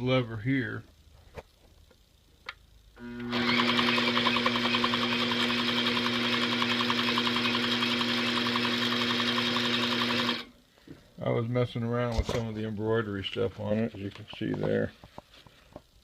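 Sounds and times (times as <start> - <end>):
sewing machine running: 3.0 - 10.5.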